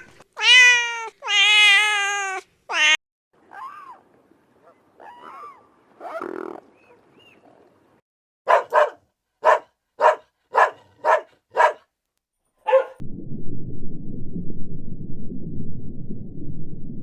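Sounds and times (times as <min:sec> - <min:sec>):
dog barking: 0:08.4 - 0:11.9, 0:12.6 - 0:13.0
steady low rumbling: 0:13.0 - 0:17.0.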